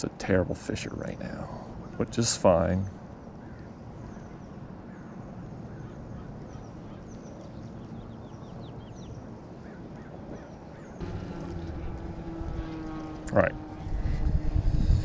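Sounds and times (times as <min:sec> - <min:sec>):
birds chirping: 0:00.0 - 0:15.0
wind: 0:00.0 - 0:15.0
water rumbling: 0:11.0 - 0:15.0.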